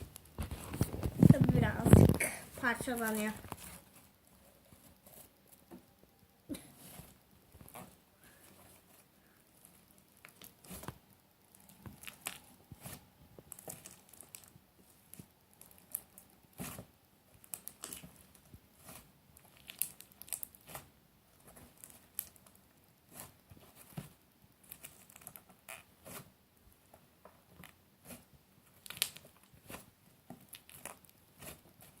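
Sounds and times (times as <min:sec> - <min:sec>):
slime crackling and tearing: 0:09.6 - 0:23.7, 0:24.6 - 0:26.3, 0:28.0 - 0:32.0.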